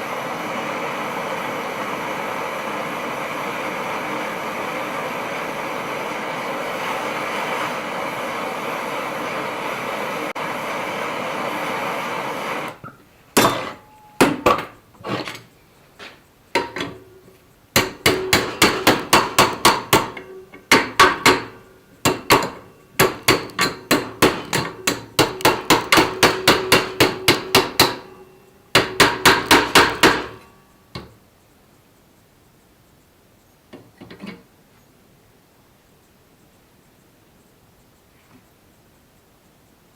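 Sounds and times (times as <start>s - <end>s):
hammer striking steel bar: 12.8s - 14.8s, 17.8s - 30.5s.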